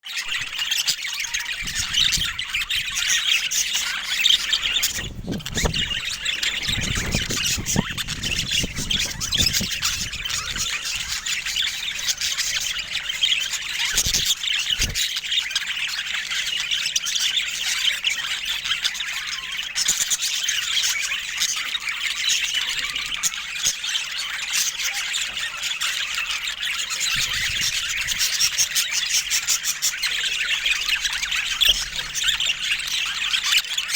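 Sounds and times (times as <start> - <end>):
budgerigars chattering: 0.2 - 33.9
low rumbles: 4.3 - 10.5.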